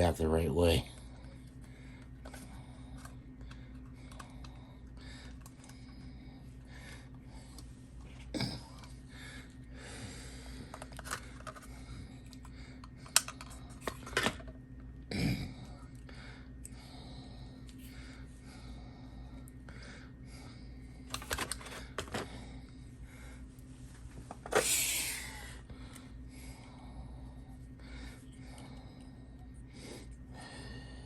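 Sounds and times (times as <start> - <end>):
electrical hum: 0.0 - 31.0
clicks of small plastic parts: 12.3 - 14.5.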